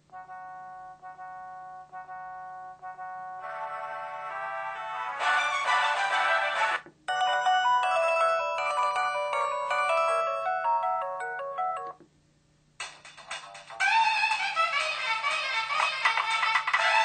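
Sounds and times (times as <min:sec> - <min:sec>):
phone ringtone melody: 0:07.1 - 0:12.0.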